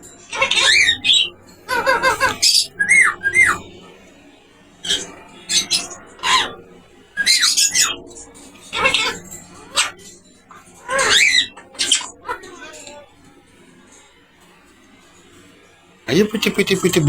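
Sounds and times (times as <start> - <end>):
parrot squawks and whistles: 0.3 - 3.6, 4.8 - 6.6, 7.2 - 8.0, 8.7 - 10.0, 10.8 - 13.0.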